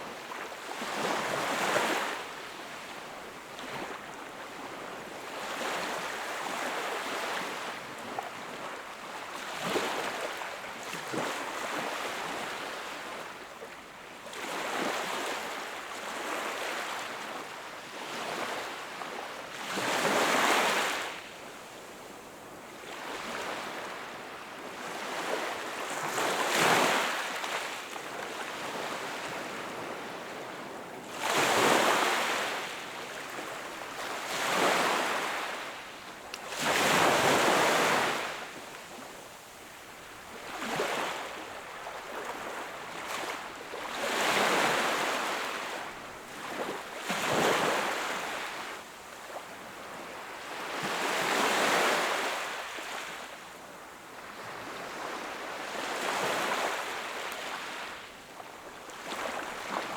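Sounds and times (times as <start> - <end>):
sea waves breaking on shore: 28.5 - 35.8.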